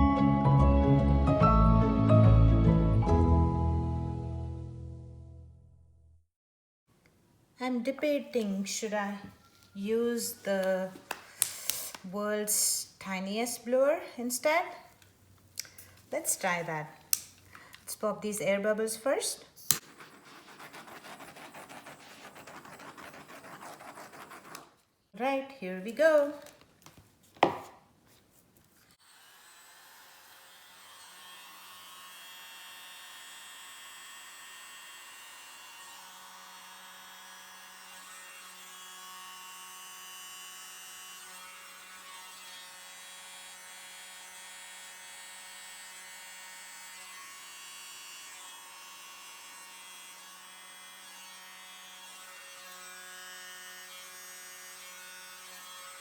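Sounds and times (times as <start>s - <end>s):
small electric blower humming: 29.0s - 56.0s.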